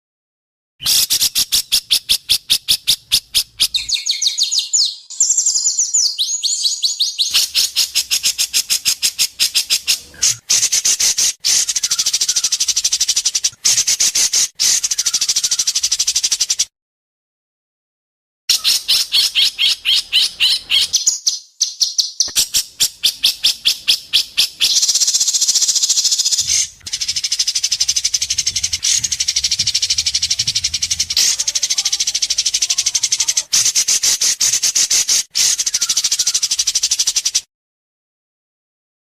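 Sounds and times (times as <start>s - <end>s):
bird rattling call: 7.2s - 16.7s, 22.4s - 37.4s.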